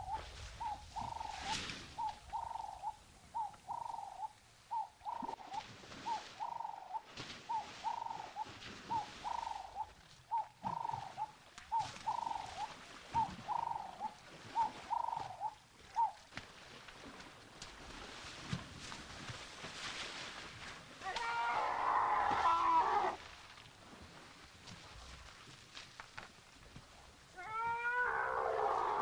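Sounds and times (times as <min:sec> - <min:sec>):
bird hooting call: 0:00.0 - 0:16.2.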